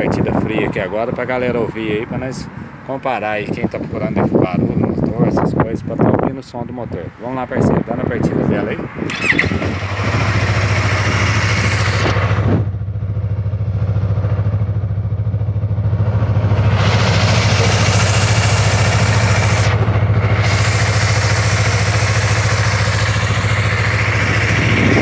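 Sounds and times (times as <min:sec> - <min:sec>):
motorcycle engine idling: 0:09.0 - 0:25.0.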